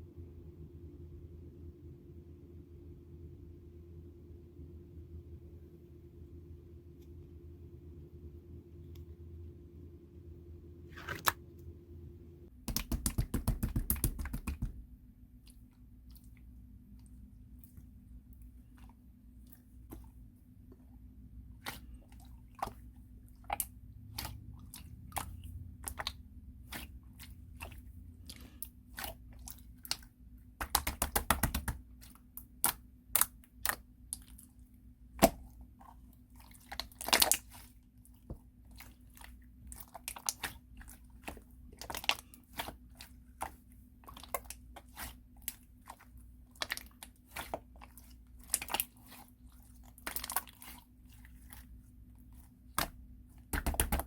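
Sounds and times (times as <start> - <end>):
slime squished by hand: 21.6 - 54.0.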